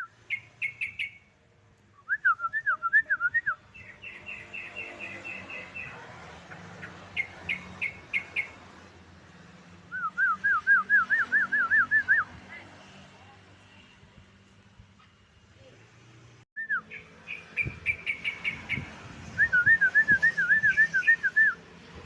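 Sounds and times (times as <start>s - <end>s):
bird song: 0.0s - 1.3s, 3.5s - 8.7s, 16.6s - 21.4s.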